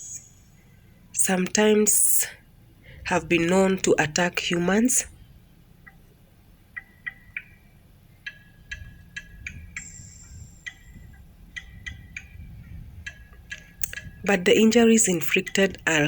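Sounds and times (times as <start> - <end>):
low steady hum: 0.0 - 16.0
eagle piping calls: 6.7 - 16.0.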